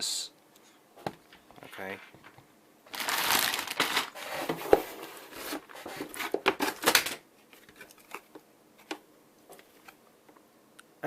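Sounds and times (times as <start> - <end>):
plastic packaging rustling: 1.7 - 8.4.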